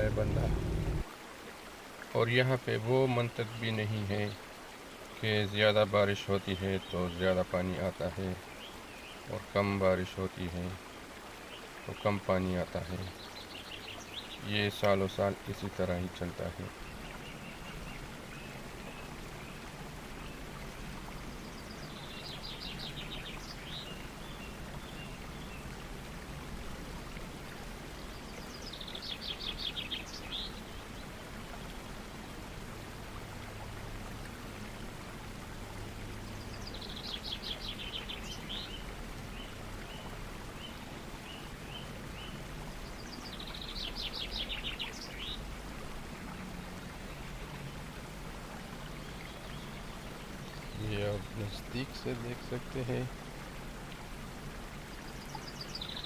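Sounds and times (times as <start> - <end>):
waterfall rushing: 0.0 - 1.2.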